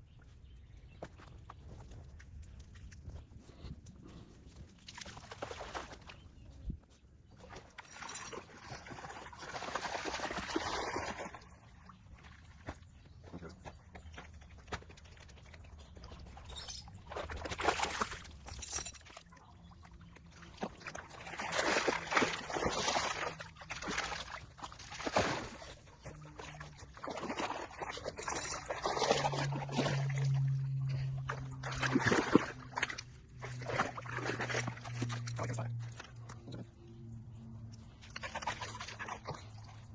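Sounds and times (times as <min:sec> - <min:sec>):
water sloshing and splashing: 0:04.5 - 0:13.0, 0:14.1 - 0:39.9
low steady hum: 0:11.6 - 0:39.9.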